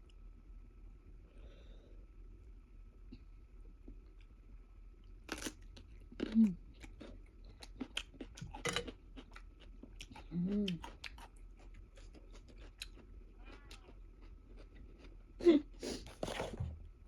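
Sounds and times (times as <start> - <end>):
person chewing food: 5.3 - 15.3
person humming: 10.3 - 10.8.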